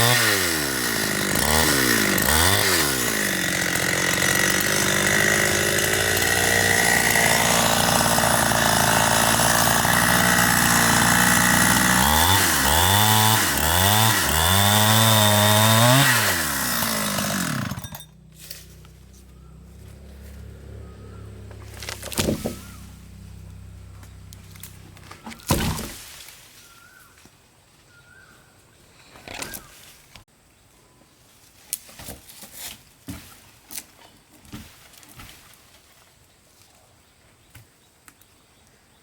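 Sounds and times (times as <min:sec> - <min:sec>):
chainsaw revving and idling: 0:00.0 - 0:25.3.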